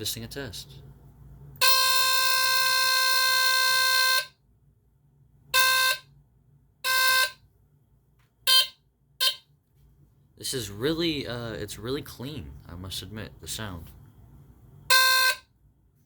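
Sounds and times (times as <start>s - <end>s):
smoke alarm horn: 1.6s - 4.5s, 5.5s - 6.2s, 6.8s - 7.6s, 8.4s - 9.6s, 14.8s - 15.7s.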